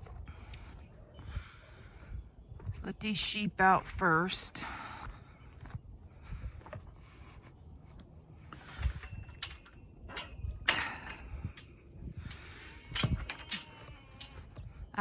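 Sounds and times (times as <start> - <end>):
gate and latch clanking: 8.8 - 14.6.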